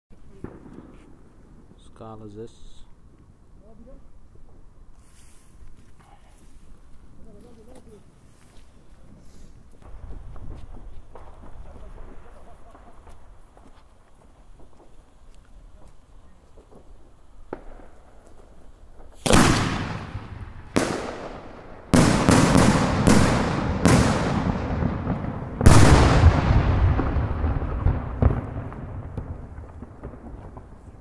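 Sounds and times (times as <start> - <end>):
firework shell bangs: 19.2 - 29.4.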